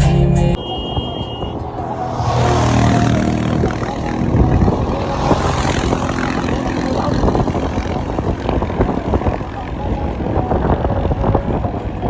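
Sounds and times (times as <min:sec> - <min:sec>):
car engine running: 0:01.7 - 0:10.5.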